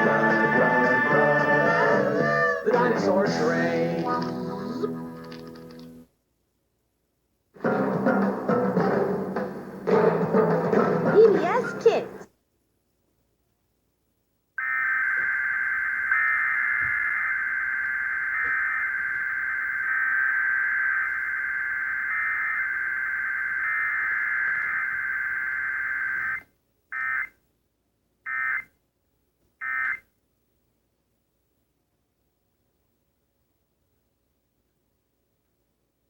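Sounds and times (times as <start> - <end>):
short data bursts: 14.6 - 26.4
continuous electronic data tone: 14.6 - 27.3.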